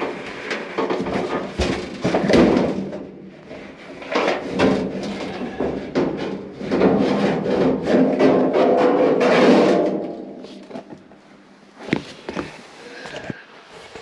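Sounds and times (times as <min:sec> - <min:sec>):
dryer drum clunking and scraping: 0:00.0 - 0:11.0.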